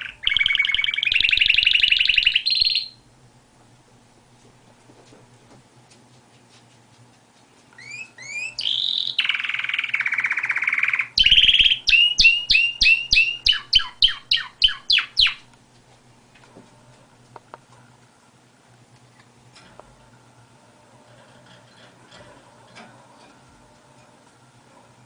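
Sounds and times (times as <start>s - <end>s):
canary singing: 0.0s - 3.0s, 7.8s - 15.5s.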